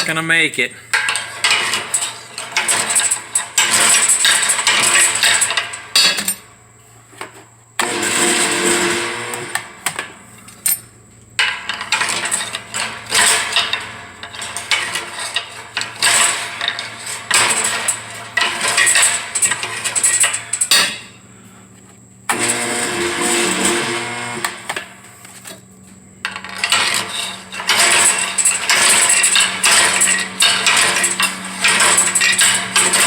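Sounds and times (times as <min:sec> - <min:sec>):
pry bar clanking on metal: 0:11.4 - 0:21.2, 0:26.3 - 0:33.0.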